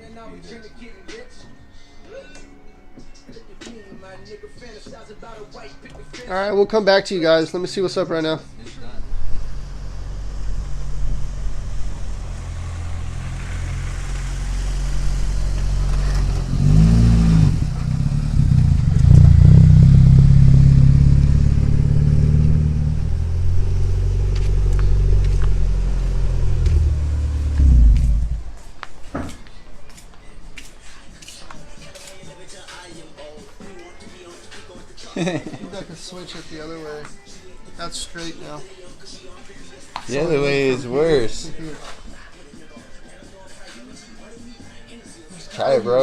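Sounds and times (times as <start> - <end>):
car engine running: 8.4 - 28.6.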